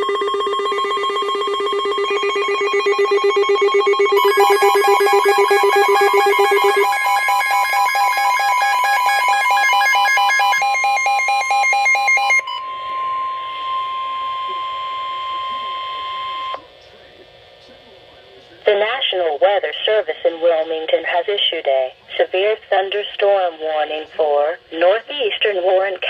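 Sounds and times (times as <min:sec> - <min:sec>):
electronic alert trill: 0:00.0 - 0:16.5
steady high warning tone: 0:00.0 - 0:17.2.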